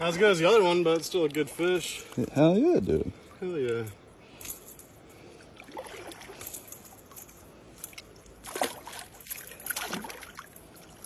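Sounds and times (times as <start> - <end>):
faint water sloshing: 0.0 - 11.0
short water splashes: 0.3 - 2.4, 5.5 - 6.6, 7.9 - 11.0.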